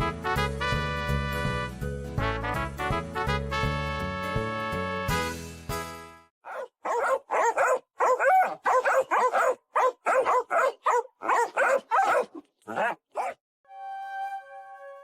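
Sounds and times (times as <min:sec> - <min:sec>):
dog barking: 0:06.4 - 0:13.4.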